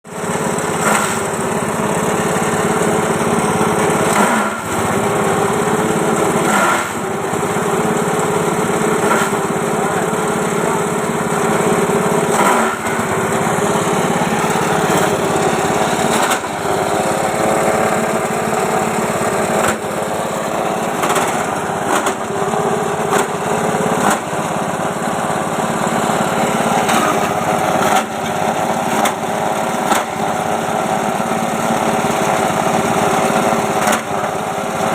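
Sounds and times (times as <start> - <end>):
chopper machine engine running: 0.1 - 34.9.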